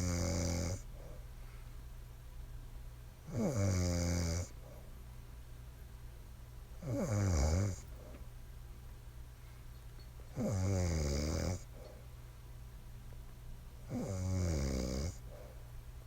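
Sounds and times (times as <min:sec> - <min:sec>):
woman snoring loudly: 0:00.0 - 0:00.8, 0:03.3 - 0:04.5, 0:06.8 - 0:07.8, 0:10.4 - 0:11.6, 0:13.9 - 0:15.2.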